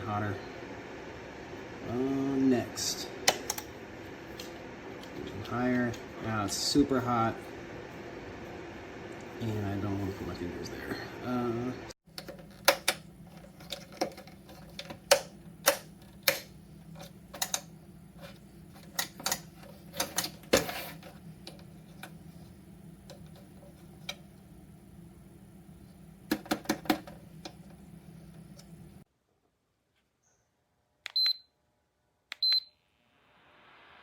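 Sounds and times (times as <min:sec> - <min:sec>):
heater fan hum: 0:00.0 - 0:29.1
hiss of air: 0:33.0 - 0:34.0.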